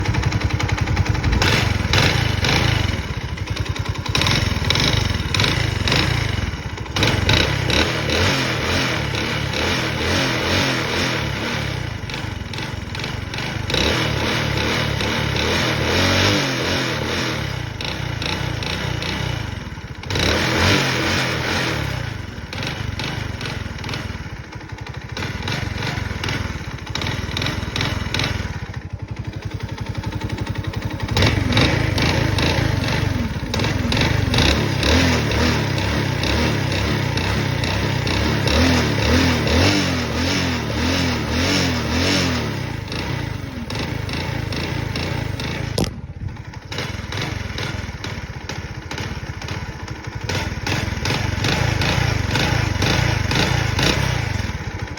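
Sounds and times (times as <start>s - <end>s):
engine knocking: 0.0s - 54.9s
moped engine revving: 0.0s - 54.9s.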